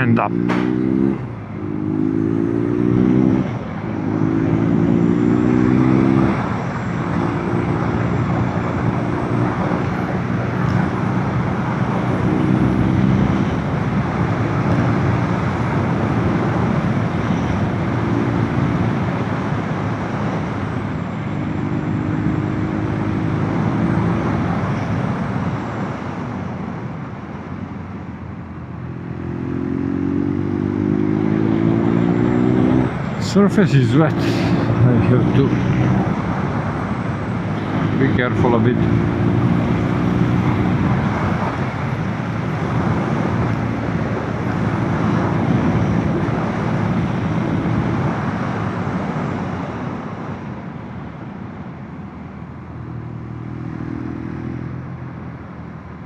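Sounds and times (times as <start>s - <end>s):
motorcycle engine accelerating: 0.0s - 19.0s, 28.2s - 48.4s
rush of wind noise: 0.0s - 56.0s.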